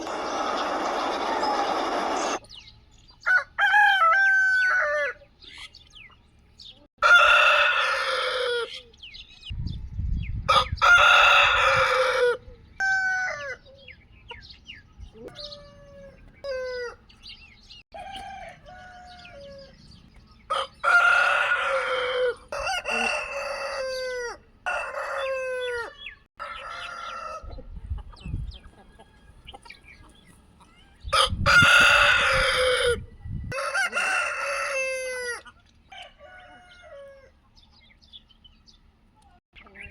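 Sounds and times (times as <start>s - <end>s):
chickens clucking: 0.0s - 3.3s, 4.9s - 9.5s, 10.4s - 38.5s, 39.1s - 39.9s
roosters crowing: 0.0s - 5.8s, 6.6s - 9.2s, 10.5s - 14.1s, 15.2s - 27.8s, 28.6s - 38.2s.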